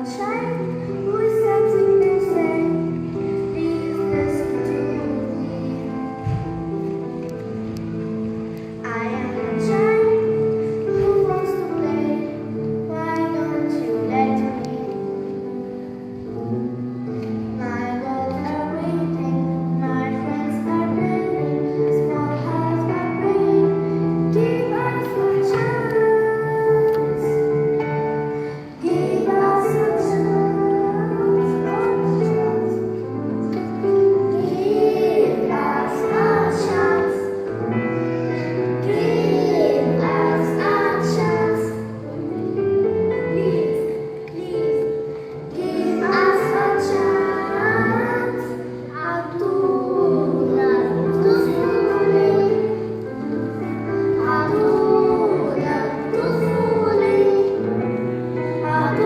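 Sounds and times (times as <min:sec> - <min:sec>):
children singing: 0:17.6 - 0:59.0.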